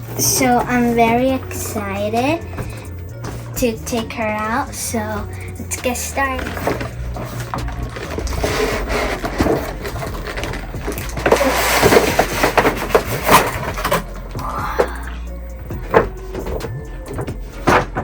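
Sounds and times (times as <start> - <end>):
packaging rustling: 6.4 - 14.4.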